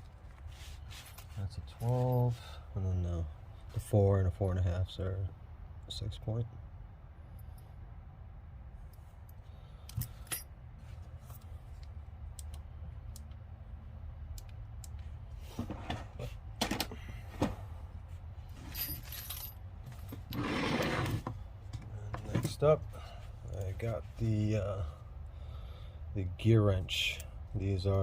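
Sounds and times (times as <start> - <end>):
metal wrenches clinking: 18.6 - 21.1.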